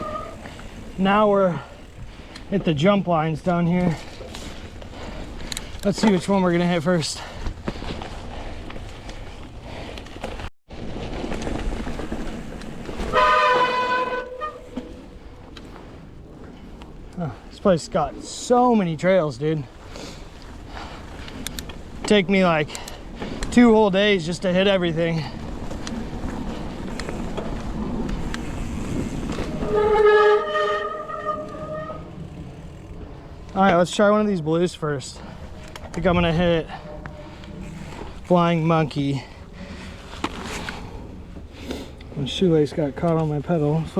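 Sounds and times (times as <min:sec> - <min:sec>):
bike disc brakes squealing: 0:00.0 - 0:02.0, 0:12.9 - 0:15.0, 0:28.3 - 0:32.9
tyres rushing on dirt: 0:00.0 - 0:43.9
wind: 0:00.0 - 0:43.9.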